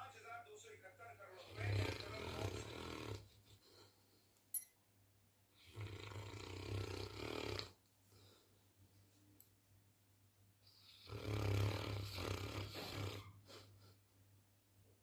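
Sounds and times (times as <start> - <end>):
dog snoring: 1.4 - 3.4, 5.5 - 7.8, 10.6 - 13.6.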